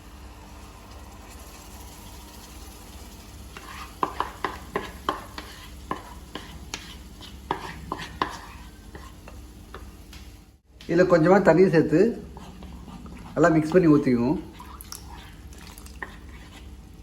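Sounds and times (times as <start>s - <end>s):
faint sizzle: 0.0s - 17.0s
spoon knocking and scraping pan: 3.5s - 10.0s, 12.2s - 16.7s.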